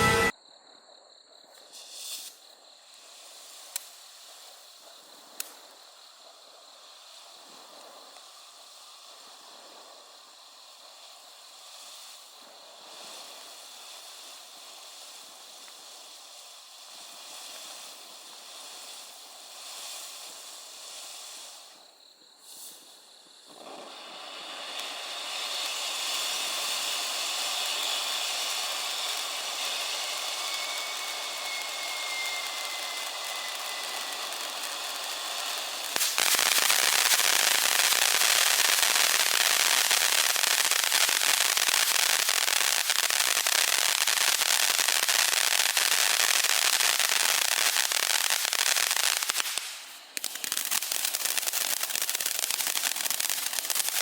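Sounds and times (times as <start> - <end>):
falling whistle: 0.0 - 0.3, 27.8 - 41.1
firework crackling pops: 0.0 - 0.4, 1.5 - 54.0
firework fountain hissing: 0.0 - 0.4, 1.6 - 54.0.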